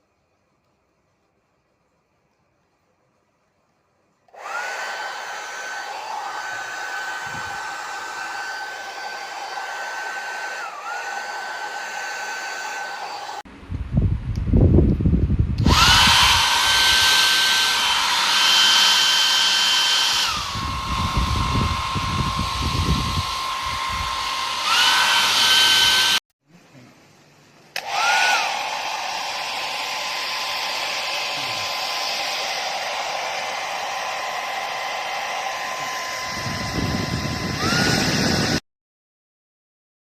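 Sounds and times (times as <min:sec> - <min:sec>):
hair dryer running: 0:04.3 - 0:13.5, 0:15.6 - 0:26.2, 0:27.8 - 0:38.6.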